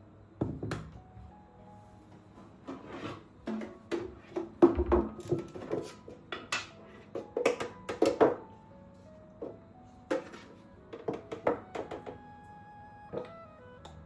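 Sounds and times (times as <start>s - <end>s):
kitchenware clinking and knocking: 3.0s - 8.5s.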